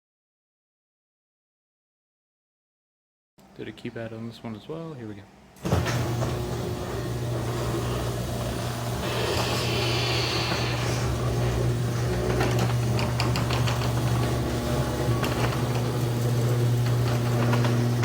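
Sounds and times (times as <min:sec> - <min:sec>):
garage door opener motor humming: 0:05.4 - 0:18.0
brief hiss: 0:09.0 - 0:11.2.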